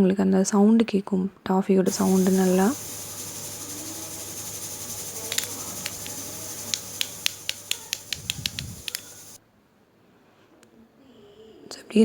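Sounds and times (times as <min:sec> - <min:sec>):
steady hiss: 0:01.9 - 0:09.4
toffee clicking on a plate: 0:01.9 - 0:09.4.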